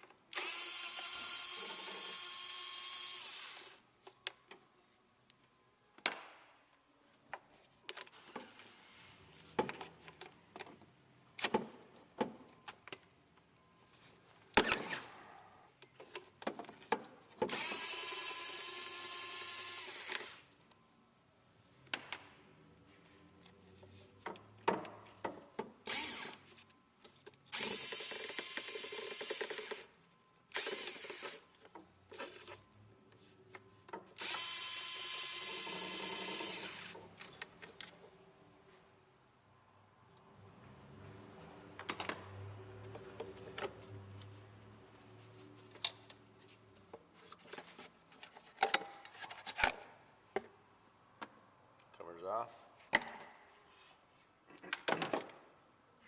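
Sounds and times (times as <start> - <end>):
cordless power tool whining: 0.3 - 3.8, 17.5 - 20.4, 25.9 - 26.4, 34.2 - 37.0.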